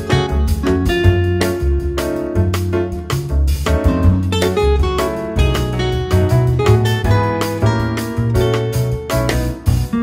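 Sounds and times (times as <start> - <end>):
instrumental piano music with beat: 0.0 - 10.0.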